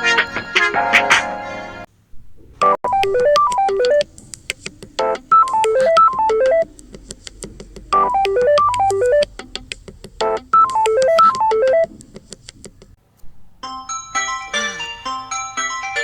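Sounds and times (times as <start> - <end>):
chord ringtone: 2.8 - 4.1, 5.0 - 6.7, 8.0 - 9.3, 10.2 - 11.9, 13.6 - 16.0
melodic keyboard-like ringtone: 2.8 - 4.1, 5.0 - 6.7, 8.0 - 9.3, 10.2 - 11.9, 13.6 - 16.0.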